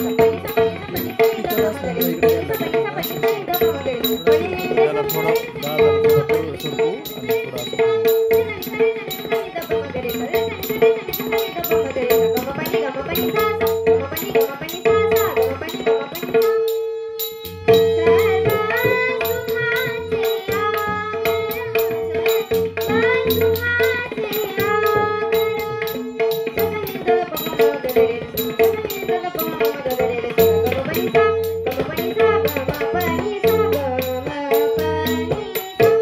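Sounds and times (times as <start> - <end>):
girl singing: 0.0 - 36.0
tabla: 0.0 - 36.0.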